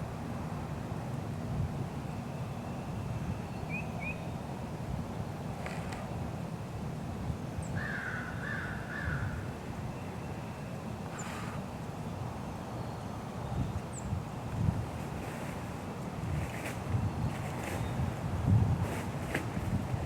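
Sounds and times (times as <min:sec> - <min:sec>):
crow cawing: 0:07.8 - 0:09.4.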